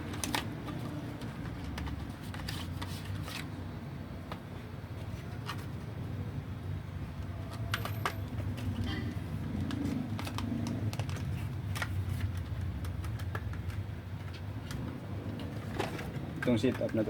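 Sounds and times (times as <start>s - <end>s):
plastic clicks and taps: 9.6s - 15.5s.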